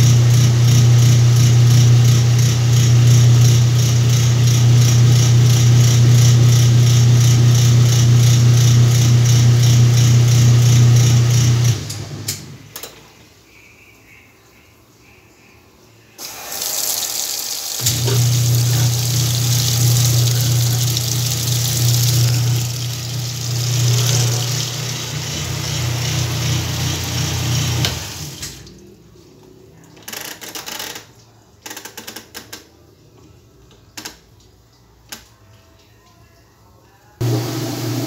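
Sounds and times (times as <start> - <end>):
washing machine humming with water: 0.0 - 13.1, 16.2 - 29.8, 37.2 - 38.0.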